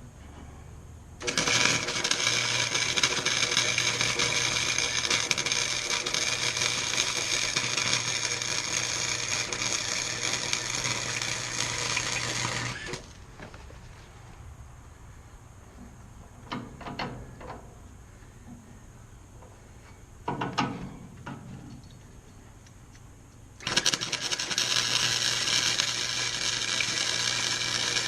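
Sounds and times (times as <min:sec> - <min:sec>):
low electrical hum: 0:00.0 - 0:28.0
electric welder crackling sizzle: 0:01.2 - 0:13.2, 0:23.6 - 0:28.0.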